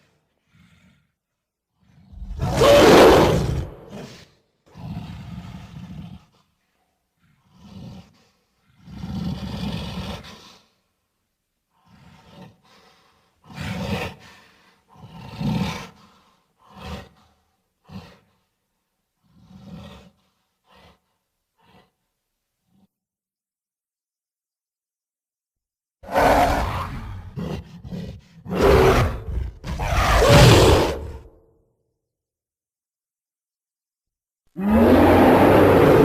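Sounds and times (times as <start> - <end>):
gorilla creature roars: 1.9 - 6.3, 26.0 - 31.4, 34.6 - 36.0.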